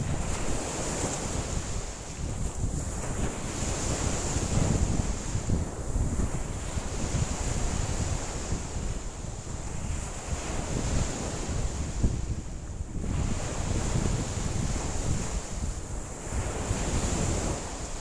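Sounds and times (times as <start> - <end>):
lake waves washing in: 0.0 - 5.3
wind rumbling on microphone: 0.0 - 18.0.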